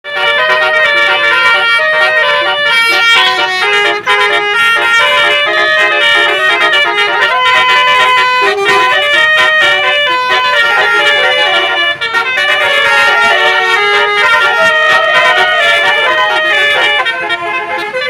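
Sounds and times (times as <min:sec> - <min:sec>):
bus horn playing a tune: 0:00.0 - 0:18.0.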